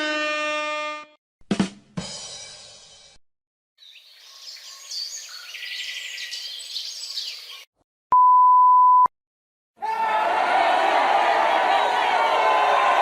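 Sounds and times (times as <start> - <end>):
songbirds chirping and singing: 3.8 - 7.7
censor bleep: 8.1 - 9.1.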